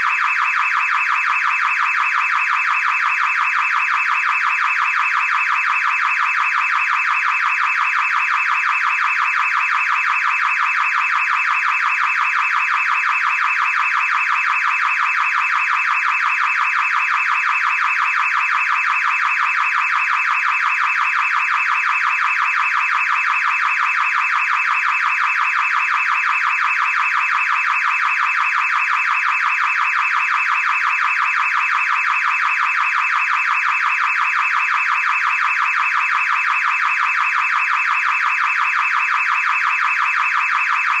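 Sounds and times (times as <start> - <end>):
car alarm warbling: 0.0 - 41.0.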